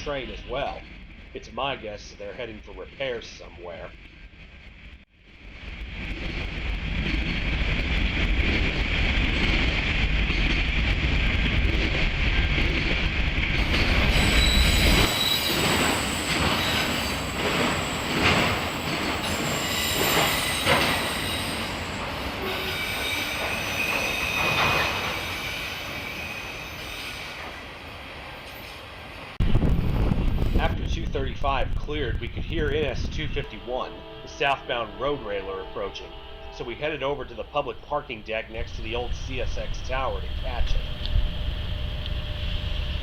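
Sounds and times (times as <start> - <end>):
freight train low rumble: 0.0 - 43.0
steel wheels squealing and clicking: 13.6 - 27.6.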